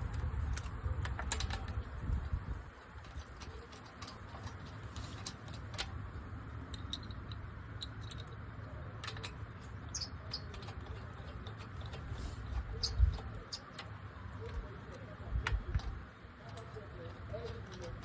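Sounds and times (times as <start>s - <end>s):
low steady hum: 0.0s - 18.0s
metallic clicks of hand tools: 9.0s - 14.6s.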